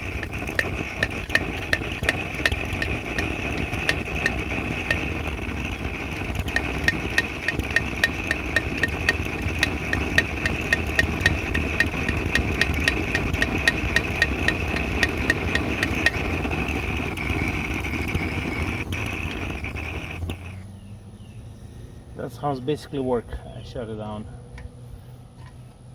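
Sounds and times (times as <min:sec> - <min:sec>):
quick ticking: 0:00.0 - 0:20.5
blow torch burning: 0:00.0 - 0:21.1.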